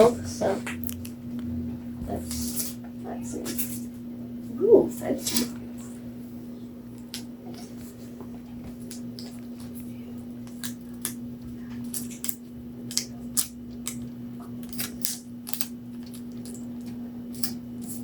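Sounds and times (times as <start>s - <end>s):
steady low hum: 0.0s - 18.0s
small clicks and crinkles: 6.9s - 18.0s.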